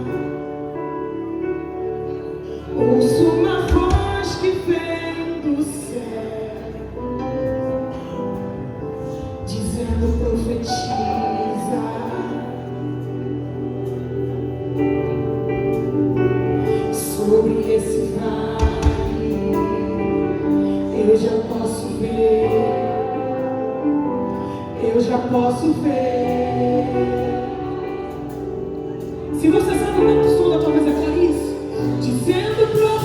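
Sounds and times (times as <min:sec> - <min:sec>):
worship song playing: 0:00.0 - 0:33.0
woman singing: 0:02.8 - 0:07.2, 0:09.4 - 0:15.3, 0:16.7 - 0:24.1, 0:24.7 - 0:33.0.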